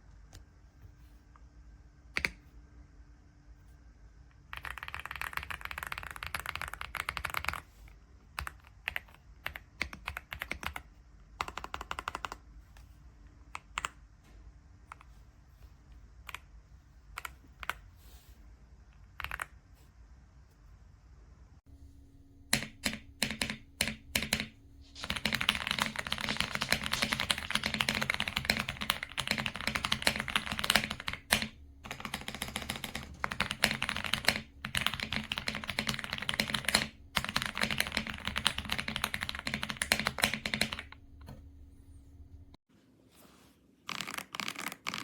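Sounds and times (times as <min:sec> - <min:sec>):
mechanical keyboard typing: 0:04.5 - 0:07.7, 0:08.3 - 0:12.5, 0:17.1 - 0:17.8, 0:19.2 - 0:19.6, 0:22.5 - 0:41.0, 0:43.9 - 0:45.0.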